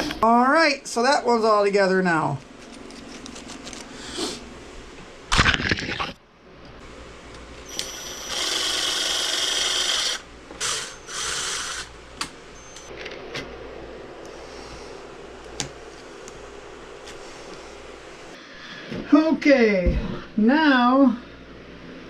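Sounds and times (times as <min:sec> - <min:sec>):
handheld power tool running: 0:07.7 - 0:11.9.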